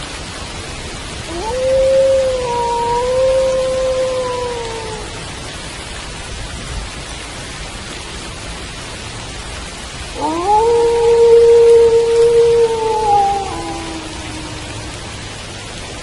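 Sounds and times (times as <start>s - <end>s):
steady rain falling: 0.0s - 16.0s
wolf howling: 1.3s - 5.2s, 10.2s - 15.5s.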